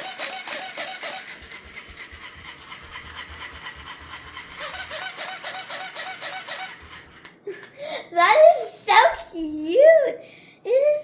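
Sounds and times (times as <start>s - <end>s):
rhythmic pulsing with pitched tone: 0.0s - 7.0s
toy mechanism rasping: 0.0s - 7.3s.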